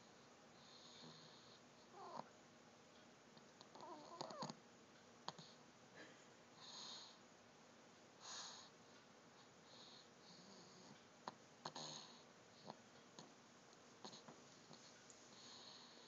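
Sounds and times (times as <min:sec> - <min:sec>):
soft hissing breaths: 0:00.0 - 0:07.4, 0:08.0 - 0:16.0
faint snoring: 0:00.1 - 0:02.3, 0:03.6 - 0:04.6, 0:06.6 - 0:07.2, 0:08.2 - 0:08.7, 0:09.4 - 0:13.3, 0:14.0 - 0:16.0.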